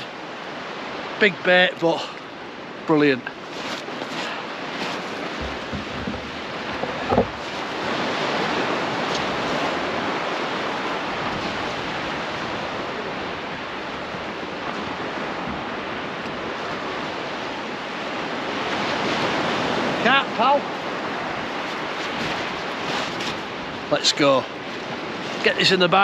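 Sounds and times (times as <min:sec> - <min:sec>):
surf washing on beach: 0:00.0 - 0:26.0
wind buffeting microphone: 0:02.4 - 0:20.0, 0:20.6 - 0:26.0
short bump: 0:05.1 - 0:07.4.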